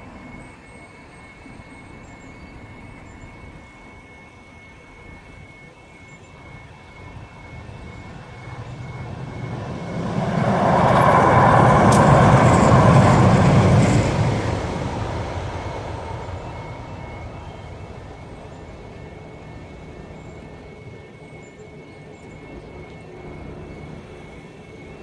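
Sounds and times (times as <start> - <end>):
train passing: 6.2 - 21.6
sharp clack of train wheels: 7.0 - 19.8.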